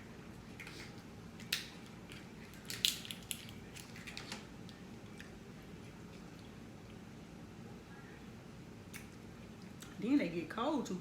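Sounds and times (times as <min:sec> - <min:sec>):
clicks and crackles of eating: 0:00.3 - 0:07.0, 0:08.9 - 0:10.0.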